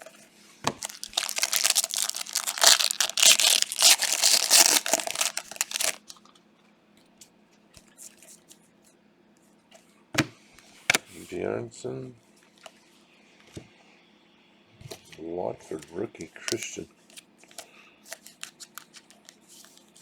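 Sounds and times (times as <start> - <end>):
wrapper tearing and crinkling: 0.8 - 6.1.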